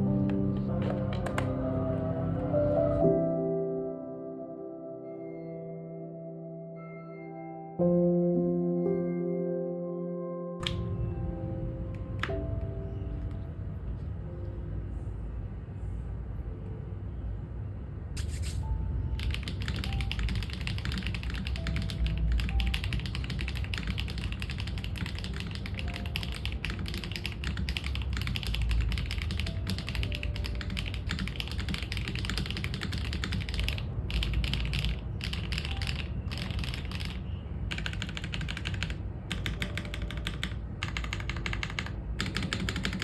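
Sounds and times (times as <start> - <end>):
soft background music: 0.0 - 43.0
fast mechanical keyboard typing: 19.2 - 43.0.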